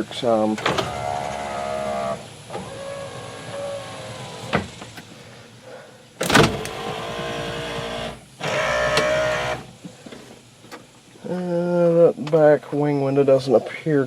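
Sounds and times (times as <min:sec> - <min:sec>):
electric window motor whining: 0:00.6 - 0:05.0, 0:06.2 - 0:09.8.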